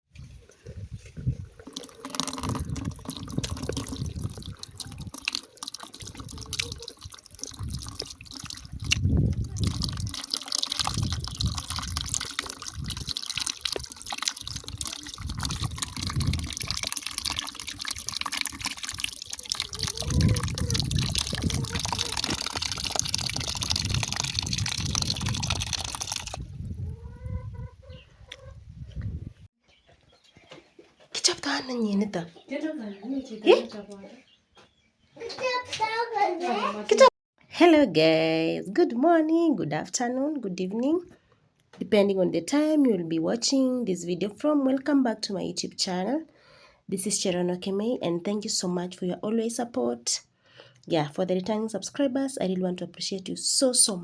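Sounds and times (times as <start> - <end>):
water running and splashing: 0.4 - 26.7.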